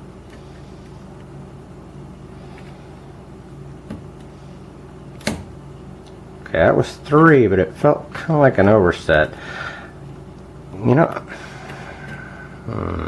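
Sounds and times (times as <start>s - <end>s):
low background hum: 0.0s - 13.0s.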